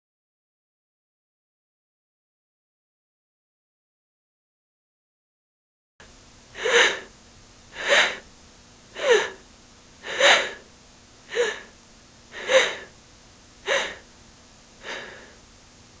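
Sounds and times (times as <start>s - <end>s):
woman panting heavily: 6.6s - 7.1s, 7.7s - 8.3s, 9.0s - 9.4s, 10.0s - 10.6s, 11.3s - 13.0s, 13.6s - 14.1s, 14.8s - 15.4s.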